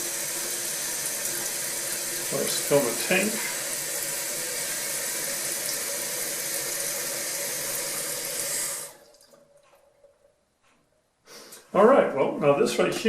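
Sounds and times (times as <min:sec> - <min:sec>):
toilet tank refilling hiss: 0:00.0 - 0:09.5.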